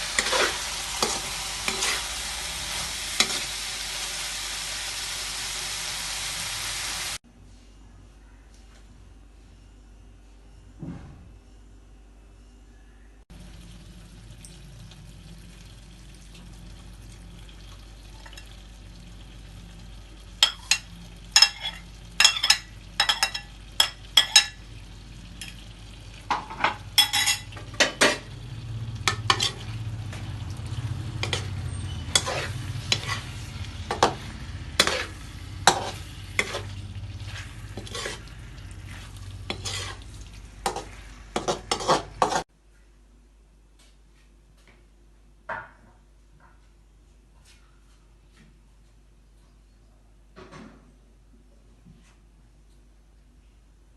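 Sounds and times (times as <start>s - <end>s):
spatula scraping against pan: 0.0s - 3.6s, 29.1s - 29.8s, 31.2s - 42.4s
food sizzling in a pan: 0.0s - 7.2s, 13.3s - 42.5s.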